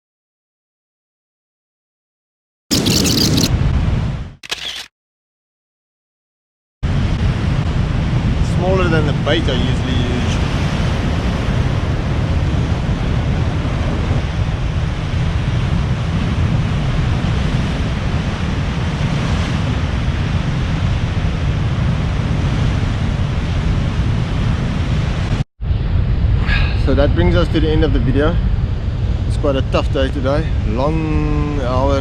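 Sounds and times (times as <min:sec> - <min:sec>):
breaking surf: 0:06.9 - 0:25.4
wind buffeting microphone: 0:06.9 - 0:32.0.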